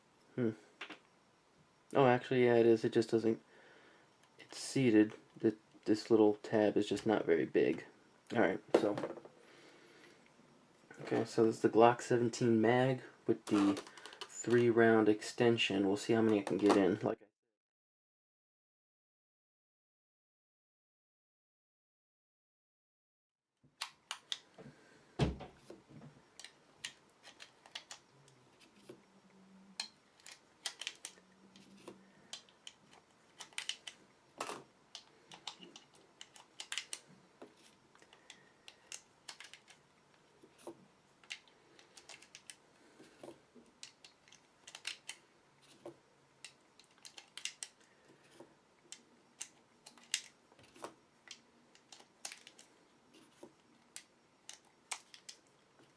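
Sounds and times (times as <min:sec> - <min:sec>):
cartridges clicking into magazine: 0:23.8 - 0:24.5, 0:29.8 - 0:31.2, 0:32.2 - 0:37.1, 0:38.0 - 0:39.8, 0:43.8 - 0:45.3, 0:46.4 - 0:47.9, 0:48.9 - 0:50.4.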